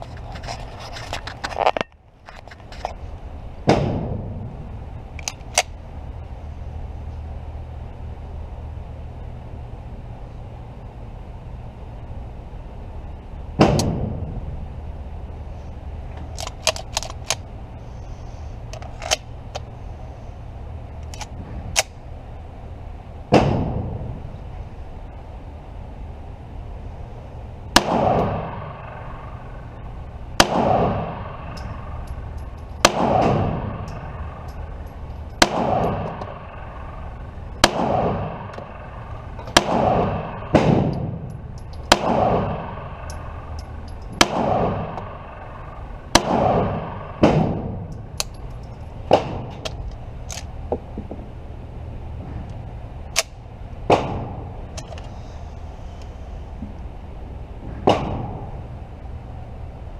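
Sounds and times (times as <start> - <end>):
pistol shots with echo: 27.8 - 29.8, 30.4 - 47.9.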